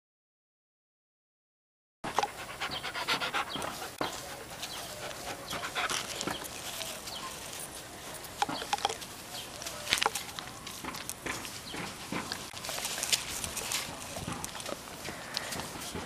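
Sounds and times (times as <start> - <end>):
dog breathing: 2.1 - 6.6, 11.7 - 16.0.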